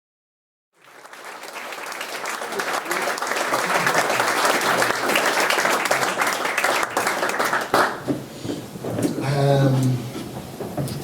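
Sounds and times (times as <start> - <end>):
audience applauding: 0.8 - 8.2.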